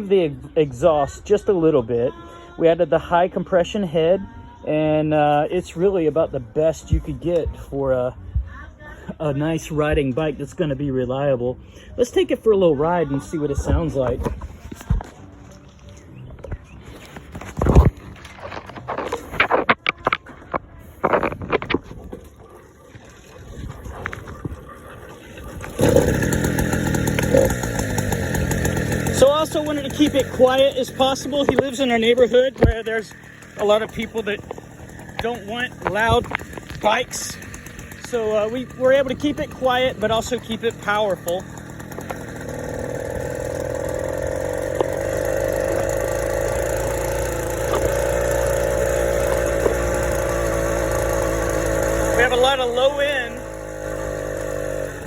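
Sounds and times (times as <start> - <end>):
small two-stroke engine running: 22.2 - 55.0.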